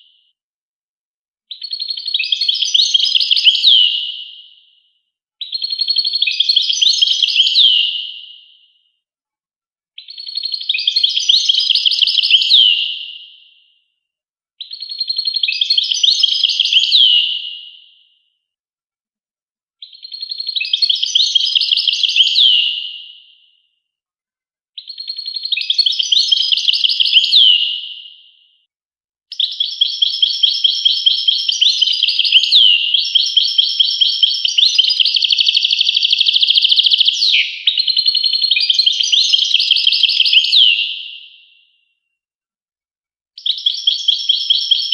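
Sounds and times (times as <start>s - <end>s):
finch twittering song: 10.0s - 13.0s, 14.6s - 17.5s, 19.8s - 22.8s, 24.8s - 27.8s, 29.3s - 41.0s.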